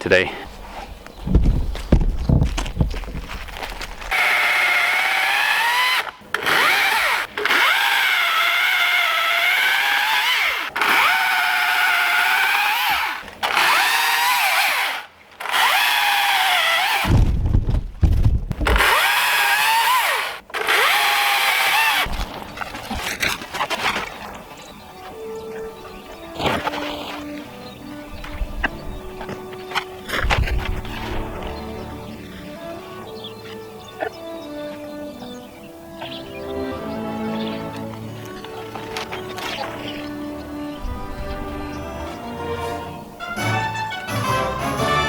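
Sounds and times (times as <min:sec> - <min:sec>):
low thumps: 0:01.2 - 0:04.1, 0:17.0 - 0:19.1, 0:40.8 - 0:42.4
electric chainsaw cutting branches: 0:04.1 - 0:17.2, 0:18.6 - 0:22.4.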